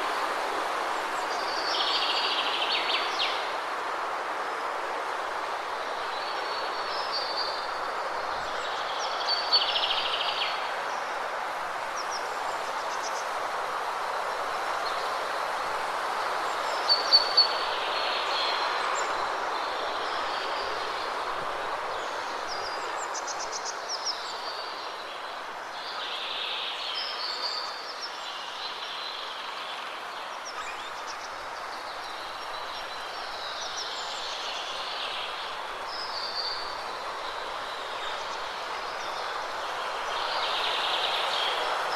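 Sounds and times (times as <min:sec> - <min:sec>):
waterfall rushing: 0:29.4 - 0:41.9.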